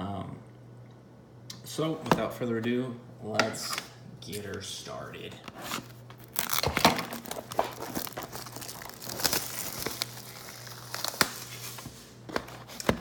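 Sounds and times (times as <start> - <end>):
plastic shrink-wrap crinkling and tearing: 5.6 - 13.0.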